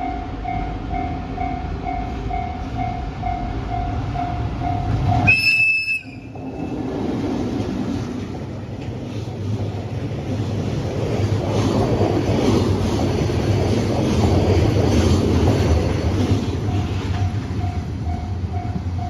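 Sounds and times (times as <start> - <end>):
train wheels rumbling on rail: 0.0 - 19.0
high whistle tone: 5.2 - 6.7.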